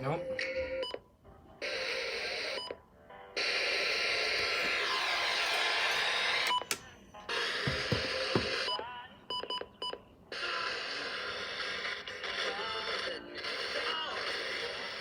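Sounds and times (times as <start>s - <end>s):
snatches of broadcast audio: 3.4s - 8.7s, 10.4s - 15.0s
radio static and hiss: 10.4s - 15.0s.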